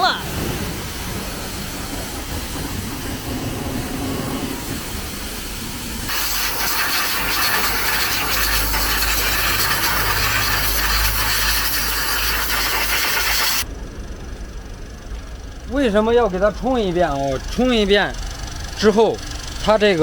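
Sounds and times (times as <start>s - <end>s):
pressure washer spraying water: 0.0s - 13.7s
low hum: 13.6s - 18.8s.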